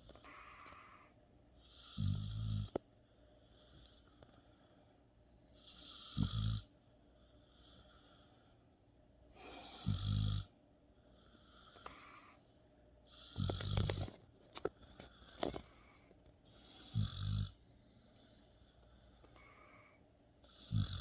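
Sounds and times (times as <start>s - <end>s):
dog snoring: 0.0s - 2.8s, 3.5s - 4.6s, 5.5s - 6.7s, 7.4s - 8.5s, 9.4s - 12.4s, 13.1s - 14.2s, 16.5s - 21.0s.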